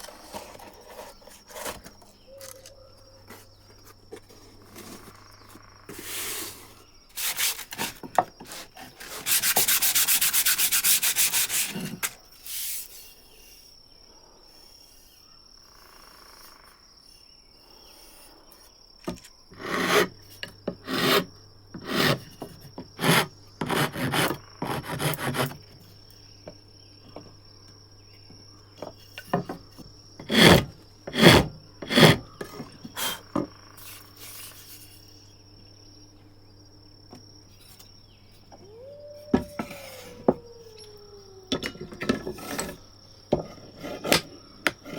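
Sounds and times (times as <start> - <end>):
hand tools scraping wood: 0.0 - 13.0, 19.1 - 25.6, 30.2 - 35.0, 39.3 - 44.9.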